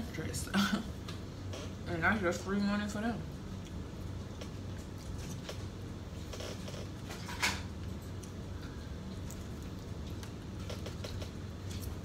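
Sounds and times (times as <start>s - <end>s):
low steady hum: 0.0s - 12.0s
chewing clicks: 9.0s - 12.0s.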